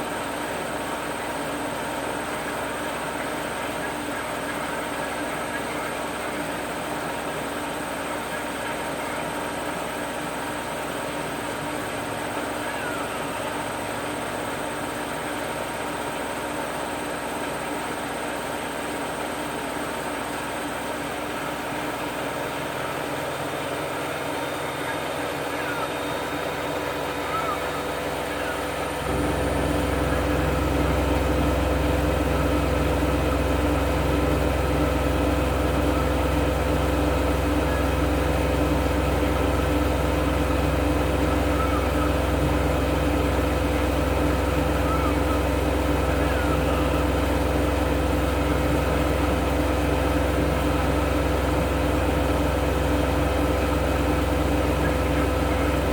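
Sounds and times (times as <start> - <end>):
washing machine running: 0.0 - 55.9
deep low hum: 24.2 - 55.9.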